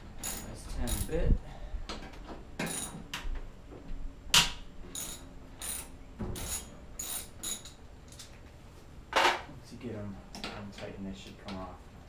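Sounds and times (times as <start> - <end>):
hand ratchet clicking: 0.2 - 1.2.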